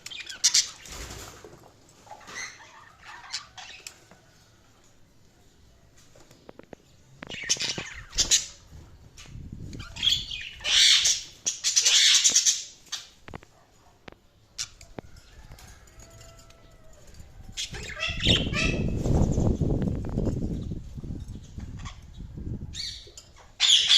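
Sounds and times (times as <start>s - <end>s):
budgies chattering and squawking: 0.0s - 1.3s, 2.1s - 4.0s, 7.2s - 8.7s, 9.8s - 13.2s, 14.6s - 15.0s, 17.1s - 19.5s, 21.6s - 22.1s.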